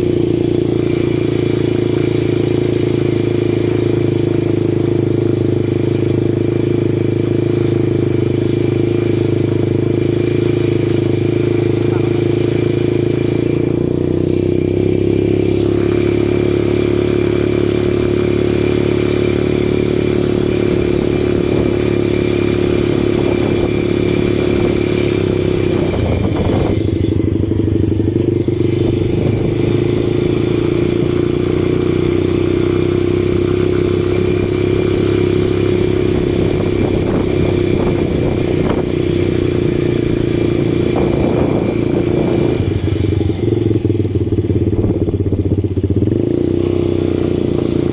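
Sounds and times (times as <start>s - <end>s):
atv engine running: 0.0s - 47.9s.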